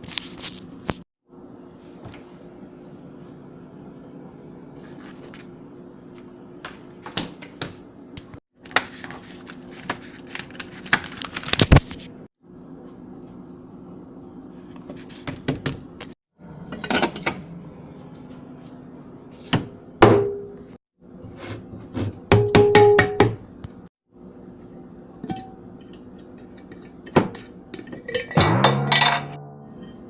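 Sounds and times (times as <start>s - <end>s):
steady low hum: 24.1s - 30.0s.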